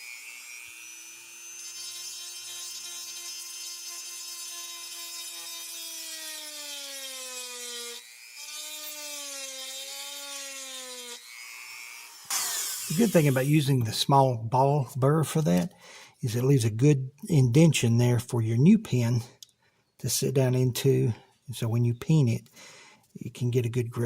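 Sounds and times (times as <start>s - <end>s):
rotary tool grinding metal: 0.0s - 13.5s.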